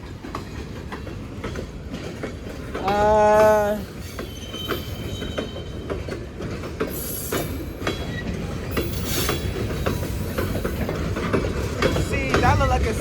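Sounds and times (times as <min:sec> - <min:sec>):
freight train rumbling: 0:00.0 - 0:13.0
wheels clicking over rail joints: 0:00.0 - 0:13.0
thin wheel squeals: 0:04.2 - 0:05.7.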